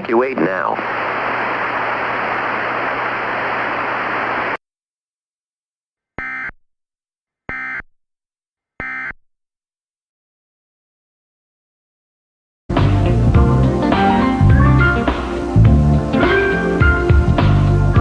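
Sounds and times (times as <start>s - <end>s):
radio static with low hum: 0.0s - 4.6s.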